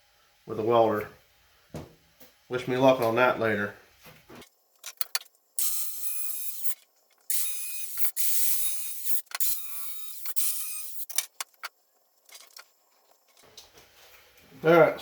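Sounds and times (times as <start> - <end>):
hand tool scraping sheet metal: 5.6 - 11.2.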